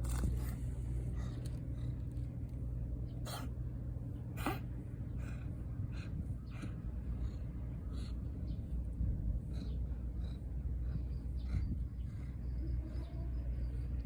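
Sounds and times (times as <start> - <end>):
steady low rumble: 0.0 - 14.0
cat sneezing: 3.3 - 3.6, 4.4 - 4.7.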